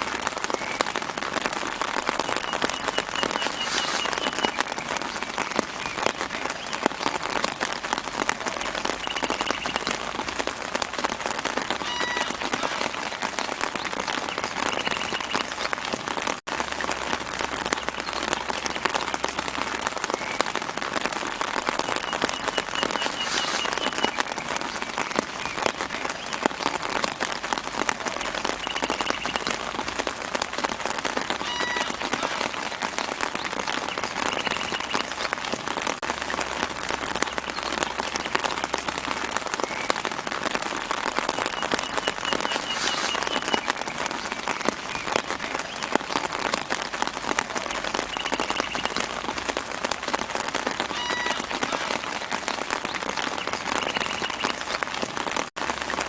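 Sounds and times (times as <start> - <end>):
rain pattering on foliage: 0.0 - 56.0
high bird chirps: 2.3 - 6.8, 9.0 - 10.0, 14.0 - 15.7, 21.9 - 24.6, 28.6 - 29.6, 33.5 - 35.2, 41.4 - 43.9, 48.1 - 49.1, 53.4 - 54.7.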